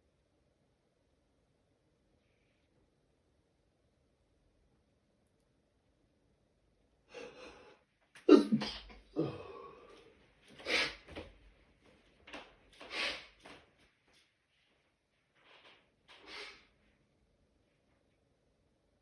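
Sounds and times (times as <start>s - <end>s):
person inhaling: 7.1s - 7.8s, 9.2s - 11.0s
person sneezing: 7.1s - 9.8s.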